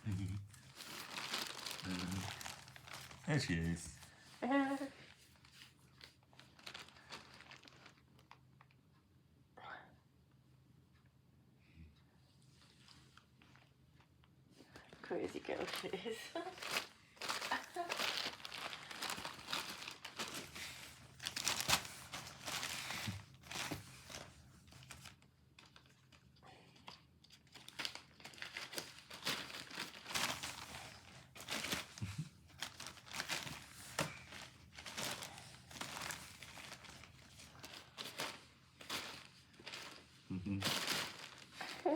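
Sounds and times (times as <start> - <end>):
bag crinkling and rustling: 0.0 - 8.8, 15.1 - 26.3, 27.3 - 41.9.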